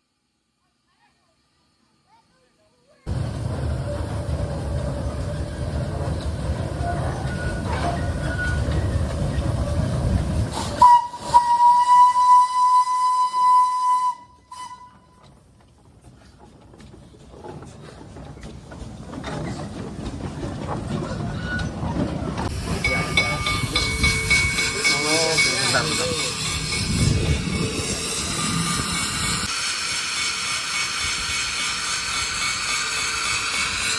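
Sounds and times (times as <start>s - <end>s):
steam locomotive whistle: 10.7s - 15.2s
steam hissing: 22.5s - 33.9s.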